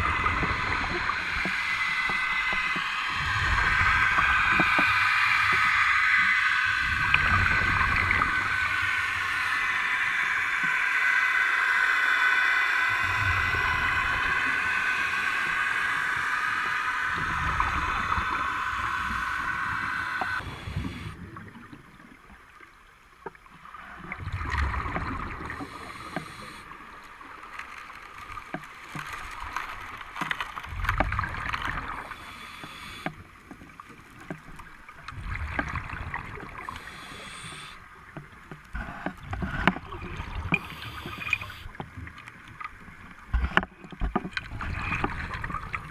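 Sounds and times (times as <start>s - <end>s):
underwater bubbling of exhaled air: 0.0s - 11.7s, 12.3s - 45.9s
regulator breathing hiss: 10.8s - 21.2s, 25.6s - 26.8s, 32.0s - 33.2s, 36.6s - 37.8s, 40.6s - 41.8s.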